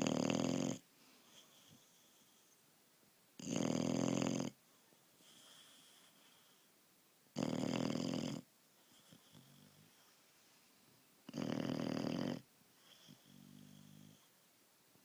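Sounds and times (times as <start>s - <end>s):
loud snoring: 0.0s - 0.8s, 3.4s - 4.6s, 7.4s - 8.4s, 11.3s - 14.2s
soft breath: 0.9s - 2.7s, 4.6s - 6.8s, 8.7s - 11.0s.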